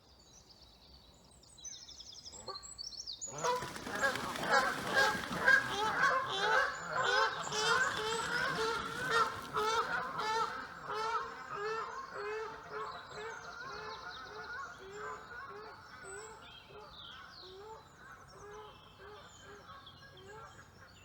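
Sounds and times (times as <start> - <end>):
geese honking: 3.3 - 11.8.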